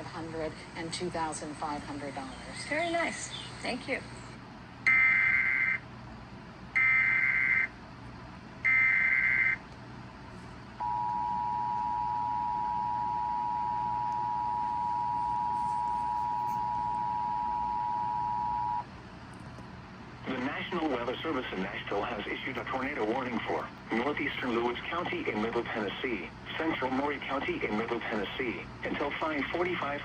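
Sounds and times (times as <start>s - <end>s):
two-tone attention signal: 10.8s - 18.8s.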